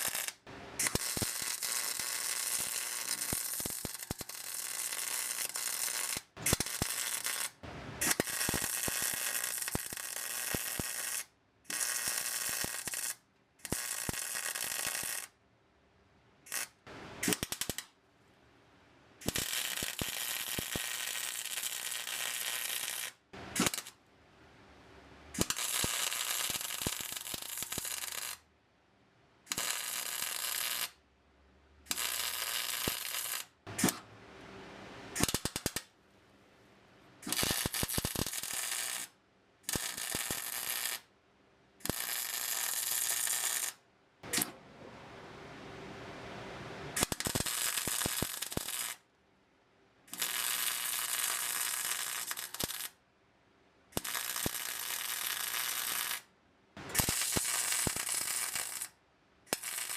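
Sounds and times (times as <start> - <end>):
welder crackling: 0.0 - 15.3, 16.5 - 17.9, 19.2 - 24.0, 25.4 - 28.4, 29.5 - 31.0, 31.9 - 34.0, 35.2 - 35.9, 37.2 - 39.1, 39.7 - 41.1, 41.8 - 44.6, 47.0 - 49.0, 50.1 - 53.0, 54.0 - 59.9.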